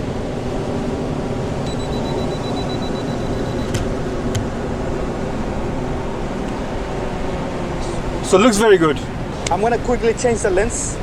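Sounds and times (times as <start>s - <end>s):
camera self-timer beeping: 1.7s - 3.8s.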